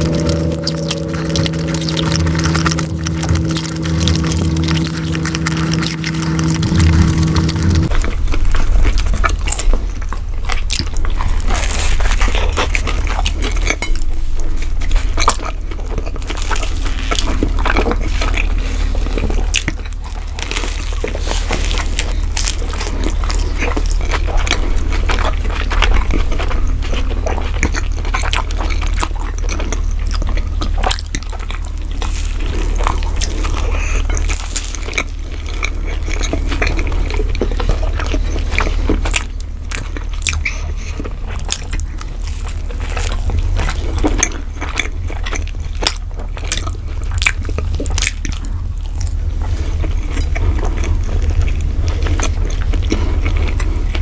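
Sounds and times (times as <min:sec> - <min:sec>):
birds crunching food: 0:00.0 - 0:08.0
steady low hum: 0:00.0 - 0:54.0.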